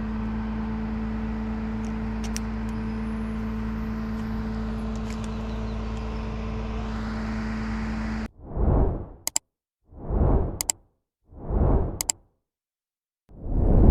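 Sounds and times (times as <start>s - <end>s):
engine running steadily: 0.0s - 8.3s.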